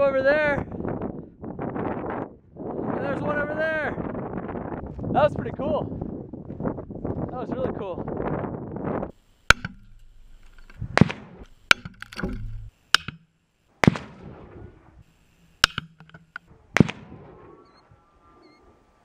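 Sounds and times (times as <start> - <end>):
rifle shots: 10.9 - 12.6, 13.8 - 14.9, 16.7 - 17.7.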